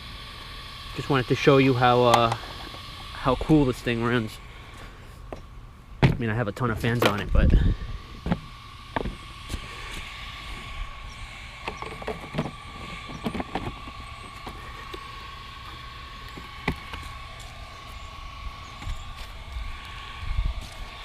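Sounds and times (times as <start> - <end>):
small cooling fans whirring: 0.0 - 21.0.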